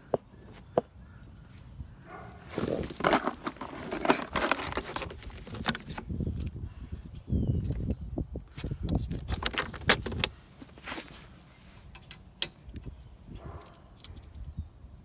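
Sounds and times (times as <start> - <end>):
metal jingling and clinking: 2.2 - 5.7
dull handling noise: 2.3 - 6.5.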